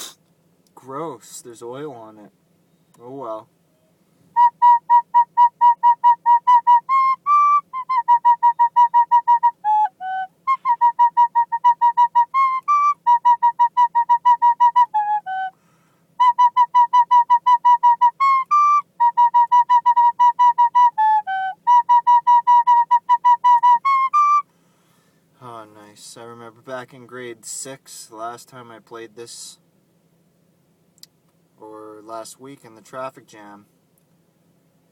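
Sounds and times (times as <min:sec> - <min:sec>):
recorder playing quick tune: 0:04.4 - 0:15.6.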